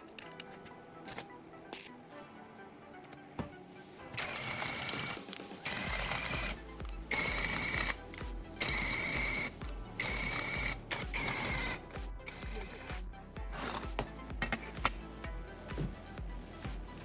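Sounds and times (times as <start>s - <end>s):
background music: 0.0s - 17.0s.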